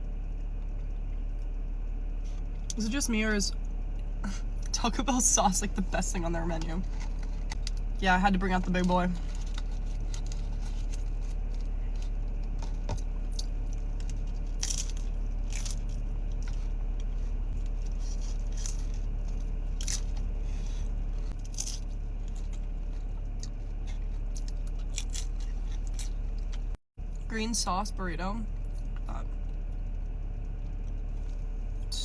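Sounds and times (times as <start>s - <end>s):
low hum: 0.0s - 32.0s
person chewing crunchy food: 6.8s - 8.0s, 8.6s - 27.2s.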